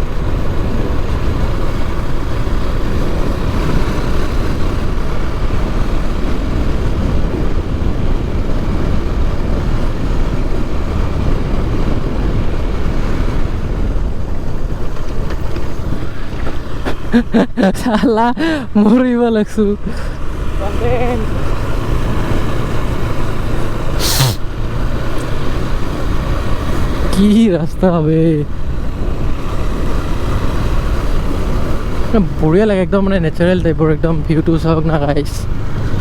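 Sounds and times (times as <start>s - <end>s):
wind rushing over microphone: 0.0s - 18.8s.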